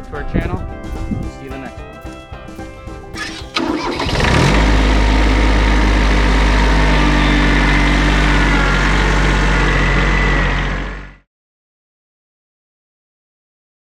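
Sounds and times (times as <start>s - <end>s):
tractor diesel engine revving: 3.2s - 11.3s.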